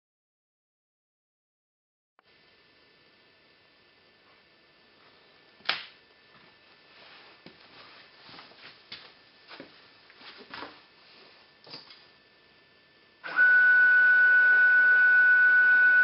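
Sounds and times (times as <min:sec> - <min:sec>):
sharp click: 0:05.6 - 0:06.0.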